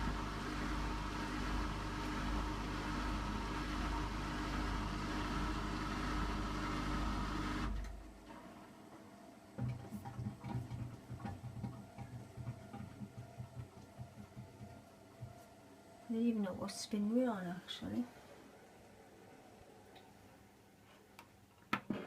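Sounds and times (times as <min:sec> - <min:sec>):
drain pump humming: 0:00.0 - 0:08.1, 0:09.6 - 0:15.4
washing machine rhythmic pulsing: 0:00.0 - 0:17.2.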